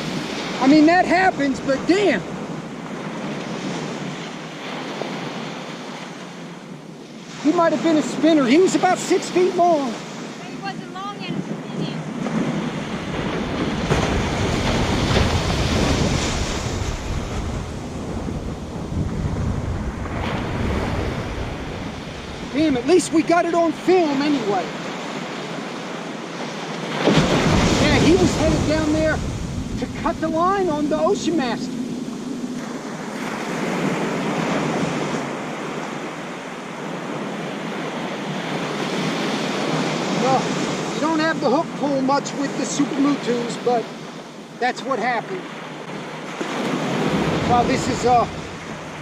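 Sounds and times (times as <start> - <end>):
ocean surf washing onto beach: 0.0 - 49.0
wind buffeting microphone: 8.8 - 43.1, 45.7 - 49.0.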